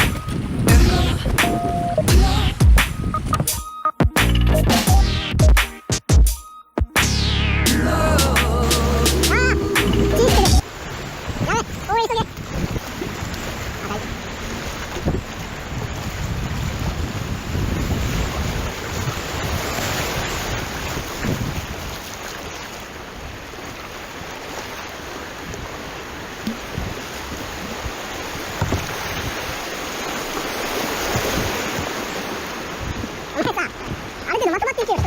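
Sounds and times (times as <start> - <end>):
wind noise on microphone: 0.0 - 3.6, 8.9 - 22.2, 25.3 - 29.7, 30.7 - 34.2
river water rushing: 7.9 - 35.0.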